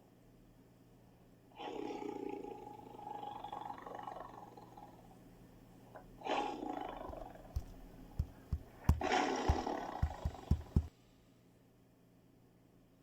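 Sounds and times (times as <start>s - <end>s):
animal giving rough breathy calls: 1.6s - 5.2s, 6.2s - 10.9s
low thumps: 7.1s - 10.9s.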